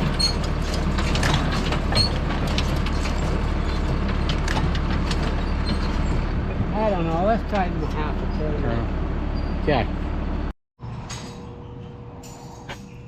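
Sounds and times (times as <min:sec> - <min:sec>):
hay baler mechanism working: 0:00.0 - 0:08.6
tractor engine running: 0:00.0 - 0:10.5.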